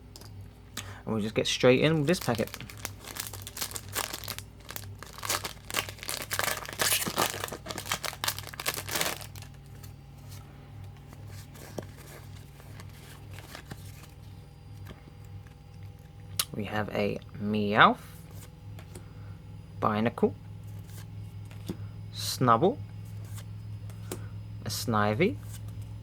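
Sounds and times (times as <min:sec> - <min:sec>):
foil wrapper tearing and crinkling: 0:02.0 - 0:09.6.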